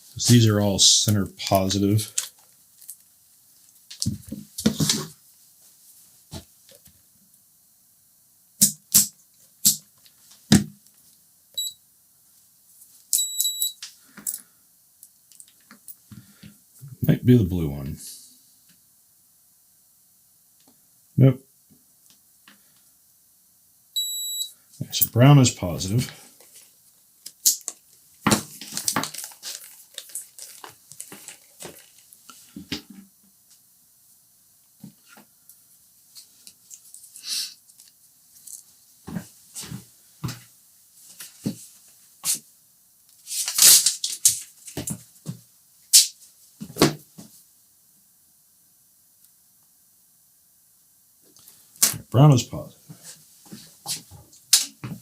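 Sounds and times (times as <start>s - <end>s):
high electronic beeps: 11.6s - 11.8s, 13.2s - 13.8s, 24.0s - 24.5s
small parts clicking and tapping: 15.0s - 16.0s, 27.2s - 27.8s.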